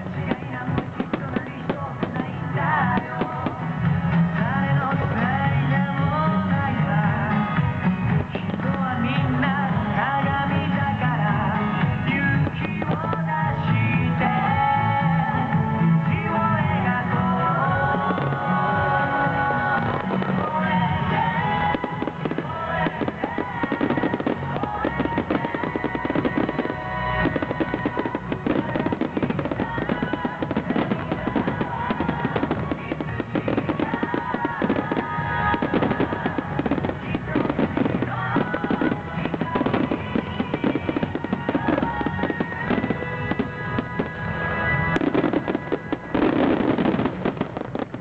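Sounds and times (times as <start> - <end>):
fireworks bursts and crackling: 0.0 - 48.0
music: 0.0 - 48.0.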